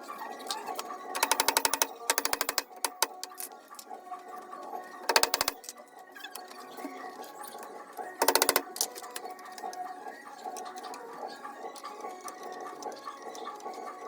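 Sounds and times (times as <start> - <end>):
rapid hand tool knocks: 5.1 - 5.6, 8.2 - 8.7.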